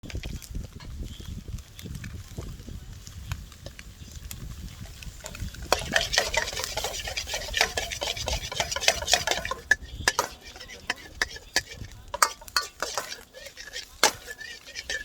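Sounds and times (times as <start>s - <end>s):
utensil scraping cookware: 4.8s - 15.0s
utensil clinks: 5.2s - 15.0s.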